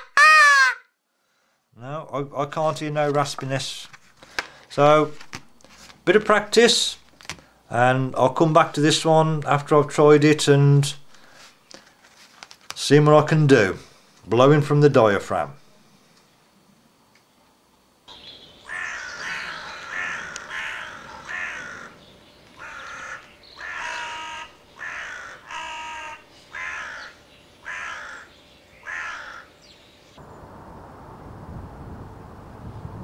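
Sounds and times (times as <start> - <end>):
crow call caws: 0.0 - 0.9, 18.6 - 22.0, 22.6 - 29.6.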